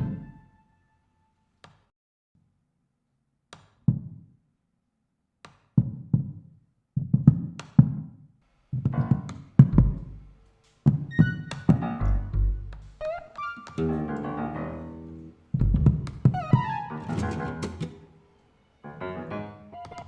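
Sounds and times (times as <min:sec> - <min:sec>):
sparse percussion thuds: 0:08.8 - 0:13.2, 0:15.6 - 0:18.1
high held tones: 0:11.1 - 0:20.0.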